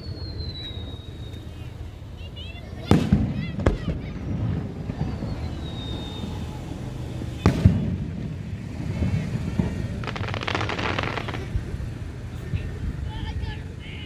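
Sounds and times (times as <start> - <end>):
fireworks rumble of bursts: 1.6 - 12.9
sharp firework bangs: 7.5 - 11.8
rapid firework crackling: 8.8 - 12.0
falling whistle: 10.0 - 11.4.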